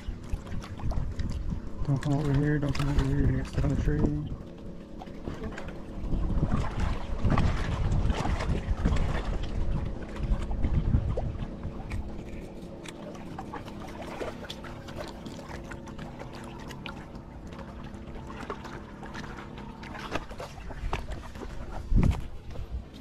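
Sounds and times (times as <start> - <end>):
wind buffeting microphone: 0.0 - 4.5, 5.2 - 12.7, 20.0 - 23.0
faint steady hum: 0.0 - 23.0.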